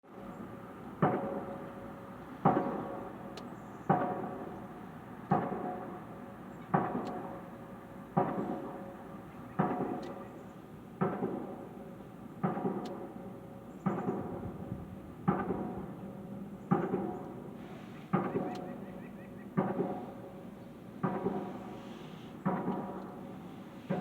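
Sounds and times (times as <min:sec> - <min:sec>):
heavy pounding from construction: 0:13.9 - 0:16.0, 0:20.9 - 0:24.0.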